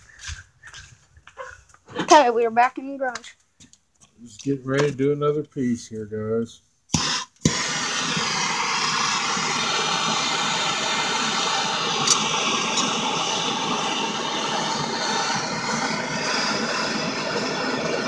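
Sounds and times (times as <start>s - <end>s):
blowtorch flame hissing: 6.9s - 18.0s.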